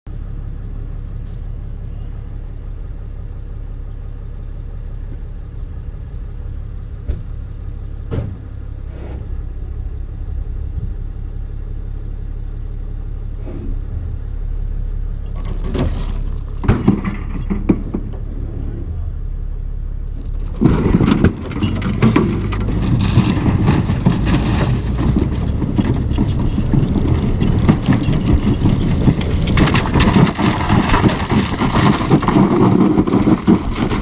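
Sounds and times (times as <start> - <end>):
excavator engine rumbling: 0.1 - 34.0
clanking and rattling: 13.9 - 18.9, 20.1 - 34.0.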